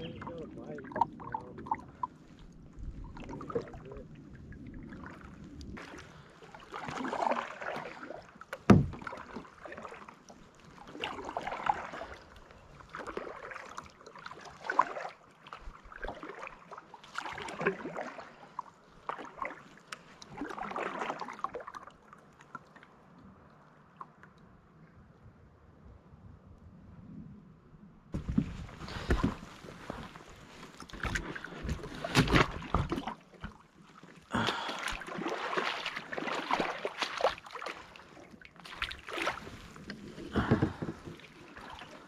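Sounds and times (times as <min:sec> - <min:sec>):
paddle strokes in water: 0:00.0 - 0:22.9, 0:28.2 - 0:42.0
paddle knocking plastic hull: 0:07.0 - 0:09.5, 0:28.1 - 0:30.1, 0:30.8 - 0:33.6, 0:40.2 - 0:41.9.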